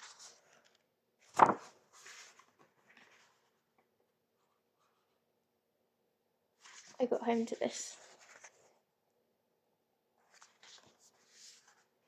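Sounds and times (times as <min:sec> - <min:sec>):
soft paper rustle: 0:00.0 - 0:05.2, 0:06.6 - 0:08.9, 0:10.2 - 0:12.0.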